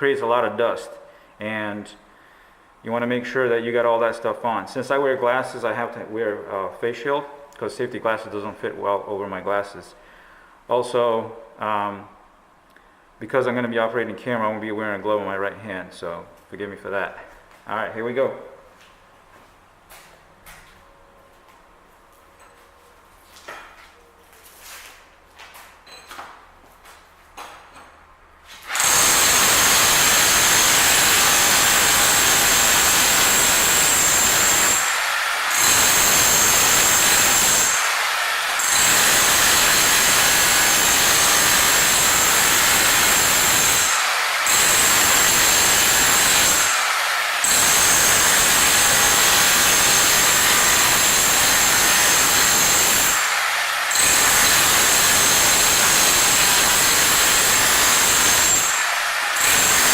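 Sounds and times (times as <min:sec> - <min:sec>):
rotary hammer chiseling concrete: 0:28.7 - 0:59.9.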